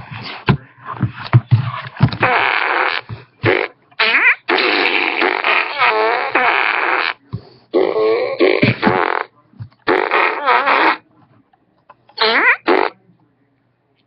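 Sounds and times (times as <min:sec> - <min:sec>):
person making fart noises: 0:01.6 - 0:11.0, 0:12.2 - 0:13.0.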